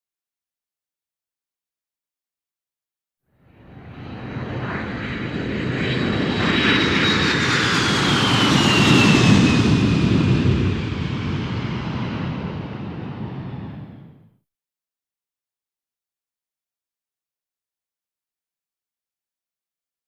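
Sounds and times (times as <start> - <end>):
fighter plane engine: 3.4 - 14.4.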